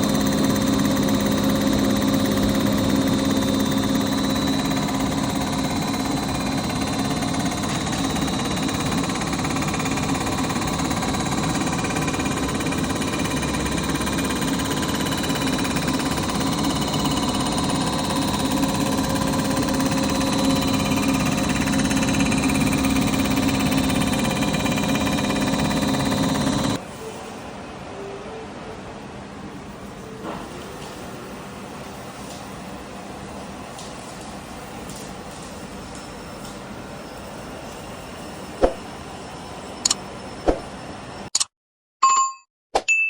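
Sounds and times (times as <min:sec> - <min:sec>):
metal cutting noise: 0:00.0 - 0:26.9
machine tool motor hum and whine: 0:00.0 - 0:41.3.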